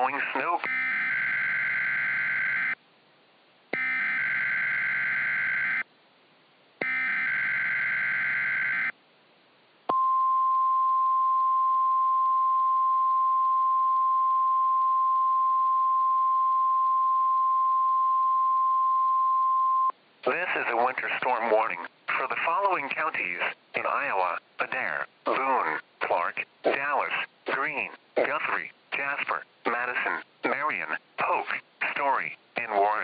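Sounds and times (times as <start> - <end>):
steady warning alarm tone: 0.6 - 2.8, 3.8 - 5.8, 6.8 - 8.9.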